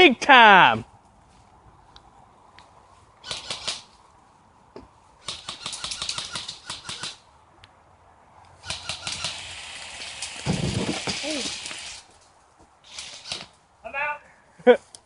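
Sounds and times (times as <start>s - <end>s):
airsoft rifle firing rapid shots: 3.2s - 3.9s, 5.2s - 7.2s, 8.6s - 9.6s.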